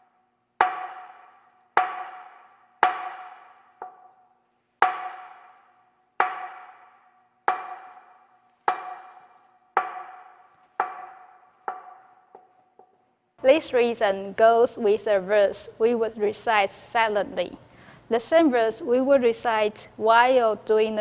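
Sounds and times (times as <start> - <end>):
wooden board struck with striker: 0.6 - 4.2, 4.8 - 13.0.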